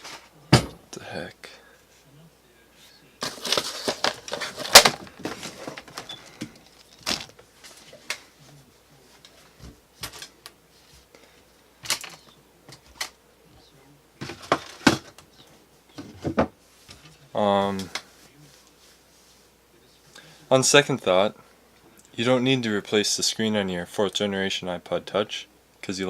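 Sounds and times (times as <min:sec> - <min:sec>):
objects knocking and clattering: 0:14.2 - 0:15.2, 0:16.0 - 0:16.6.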